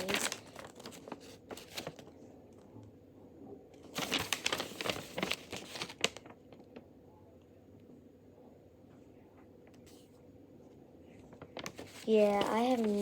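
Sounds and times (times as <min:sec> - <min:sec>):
packaging crinkling: 0:00.0 - 0:02.3, 0:03.8 - 0:06.8, 0:11.2 - 0:13.0.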